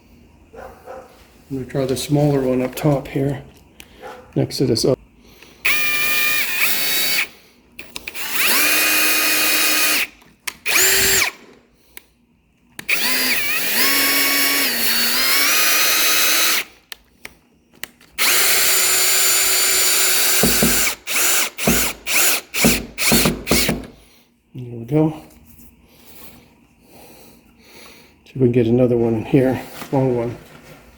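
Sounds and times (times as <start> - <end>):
power drill driving a screw: 5.7 - 11.4, 12.8 - 16.7, 18.2 - 24.0.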